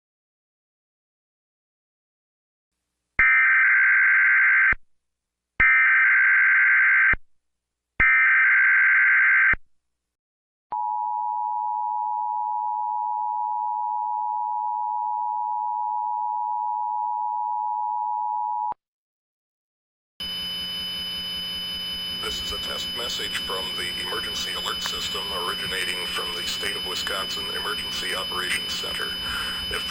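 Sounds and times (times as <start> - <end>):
data tone bursts: 20.2 - 29.9
steady tone: 20.2 - 29.9.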